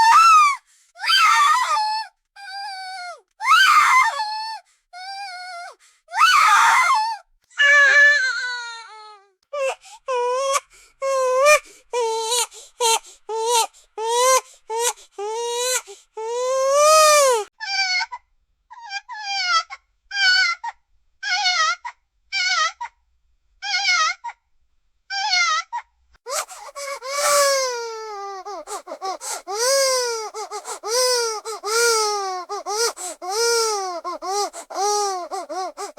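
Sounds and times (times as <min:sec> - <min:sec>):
toddler crying and wailing: 0:00.0 - 0:09.2, 0:26.3 - 0:35.9
quick catches of breath: 0:26.3 - 0:27.8, 0:28.4 - 0:35.9.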